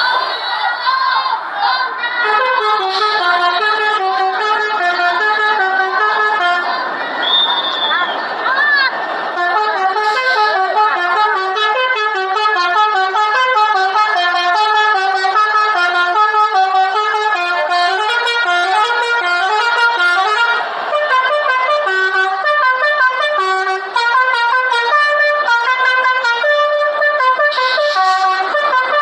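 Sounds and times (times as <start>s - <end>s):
bus musical horn melody: 2.1s - 29.0s.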